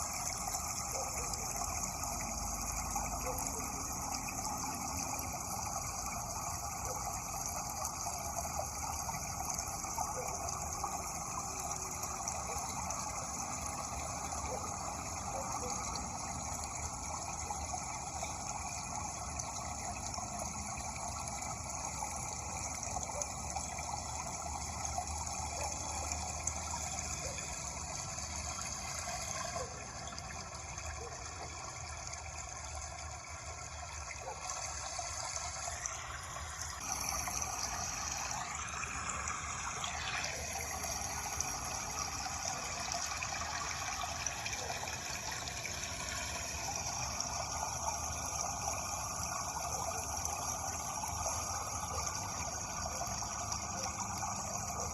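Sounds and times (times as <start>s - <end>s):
running water rushing: 0.0s - 54.9s.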